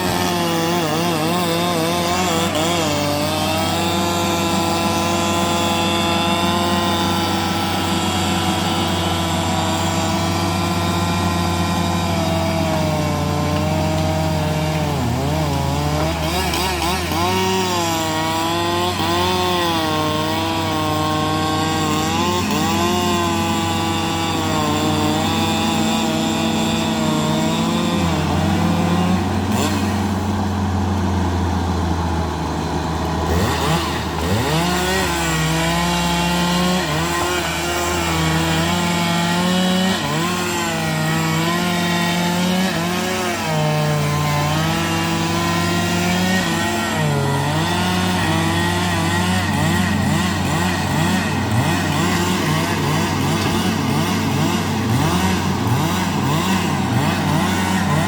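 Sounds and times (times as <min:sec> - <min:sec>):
bulldozer diesel engine: 0:00.0 - 0:58.0.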